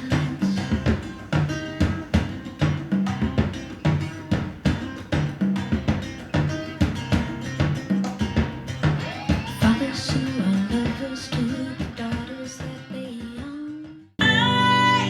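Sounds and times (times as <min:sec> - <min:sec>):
instrumental rock music: 0:00.0 - 0:10.8.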